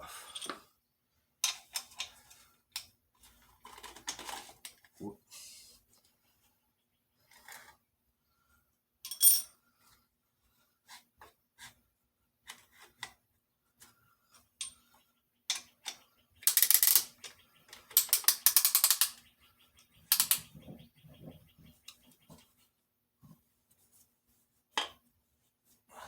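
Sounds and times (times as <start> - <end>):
rapid ratchet clicking: 16.4 - 19.2, 20.1 - 20.4.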